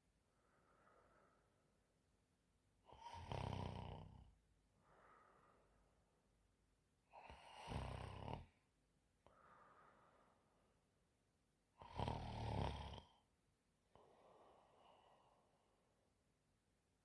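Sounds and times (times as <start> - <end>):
soft out-breath: 0.3 - 1.6, 4.8 - 5.9, 9.3 - 10.6, 14.0 - 15.6
woman snoring: 2.9 - 4.2, 7.2 - 8.5, 11.8 - 13.1.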